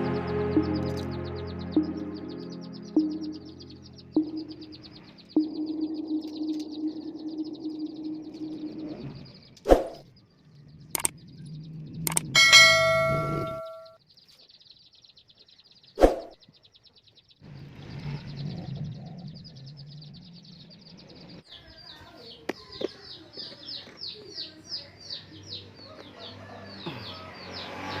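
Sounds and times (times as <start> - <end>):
chicks peeping: 0.0 - 28.0
faint high trill: 12.1 - 14.0.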